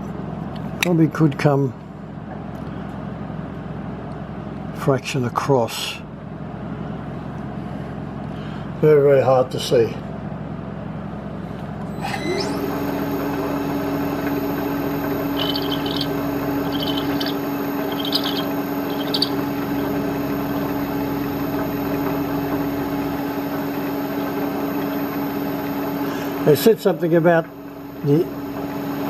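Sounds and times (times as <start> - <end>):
milling machine spindle whine: 12.0 - 29.0
short high squeaks: 15.4 - 19.4.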